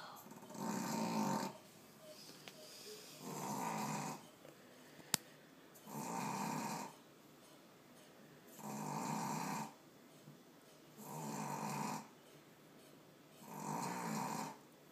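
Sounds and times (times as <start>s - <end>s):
puppy snoring: 0.0s - 1.6s, 2.6s - 4.4s, 5.8s - 7.0s, 8.5s - 9.8s, 11.0s - 12.2s, 13.4s - 14.7s.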